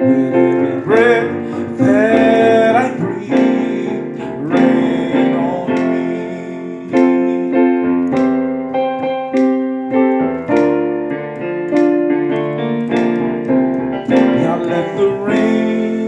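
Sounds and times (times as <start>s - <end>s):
keyboard playing slow chords: 0.0s - 16.0s.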